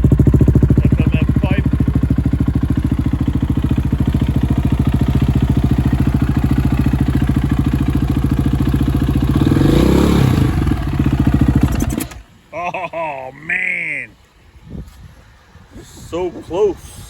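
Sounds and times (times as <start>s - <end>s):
motorcycle engine idling: 0.0s - 12.3s
motorcycle engine revving: 0.0s - 12.3s.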